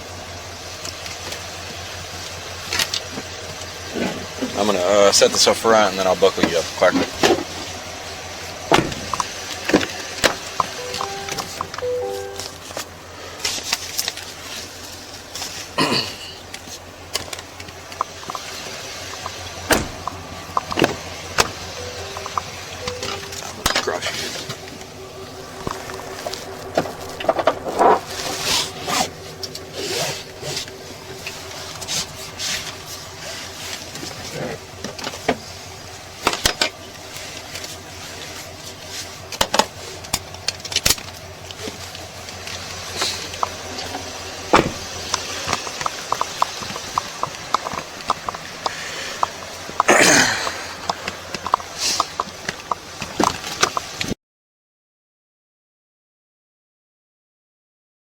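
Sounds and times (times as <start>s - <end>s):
steady low hum: 0.0s - 52.9s.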